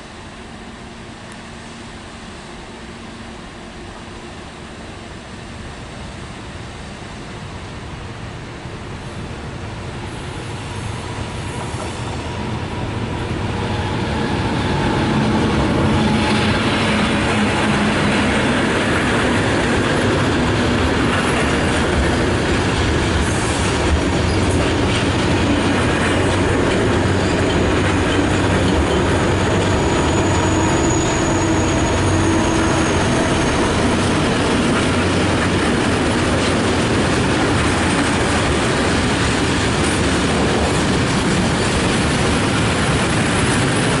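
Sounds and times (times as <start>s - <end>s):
freight train rumbling: 0.0s - 44.0s
wheels clacking over rail joints: 14.9s - 30.7s, 32.7s - 44.0s
wheel squeal: 28.8s - 33.8s.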